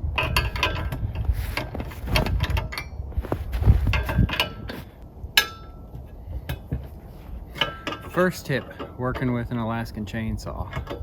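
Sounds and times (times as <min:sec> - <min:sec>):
metal tools clinking and knocking: 0:07.5 - 0:09.6.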